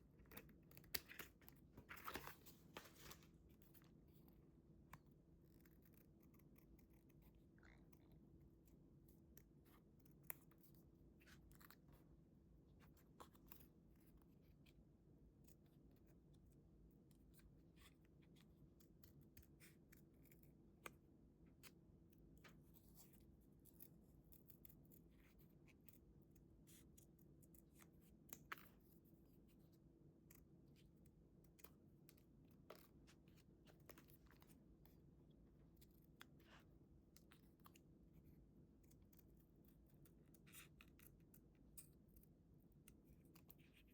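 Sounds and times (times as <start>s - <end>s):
low room hum: 0.0s - 43.9s
paper handling: 1.1s - 3.4s.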